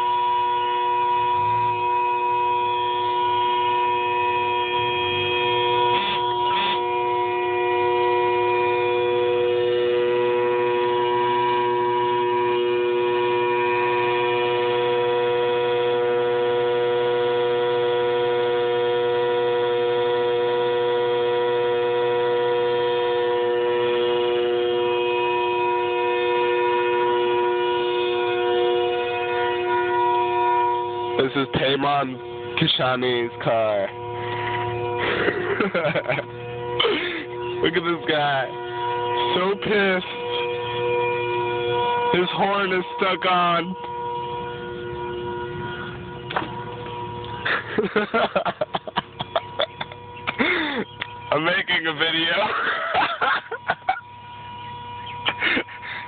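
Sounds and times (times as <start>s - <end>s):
car horn blaring: 0.0s - 56.0s.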